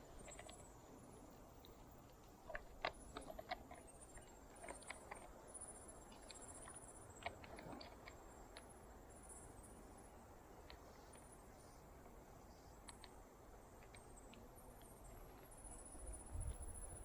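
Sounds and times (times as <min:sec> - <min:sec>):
light clicks and taps: 0:12.8 - 0:13.2.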